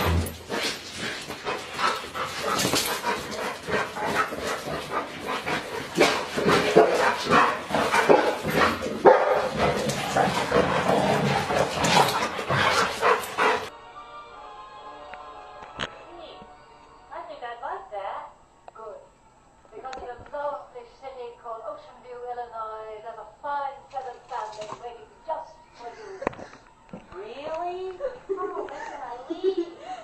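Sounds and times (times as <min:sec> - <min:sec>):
dog barking: 0:06.0 - 0:13.7.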